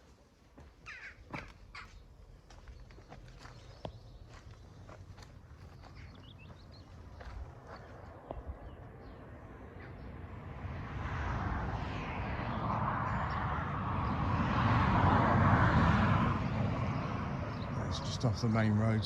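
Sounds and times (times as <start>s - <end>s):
car passing: 7.2s - 19.0s.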